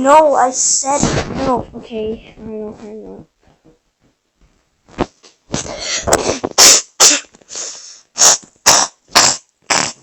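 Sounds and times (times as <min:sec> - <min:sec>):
person making harsh breathy bursts: 0:05.5 - 0:10.0.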